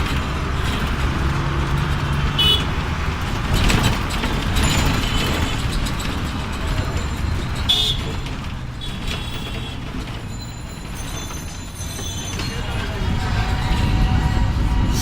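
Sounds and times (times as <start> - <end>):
road traffic: 0.0 - 15.0
short high-pitched horn toot: 13.2 - 15.0.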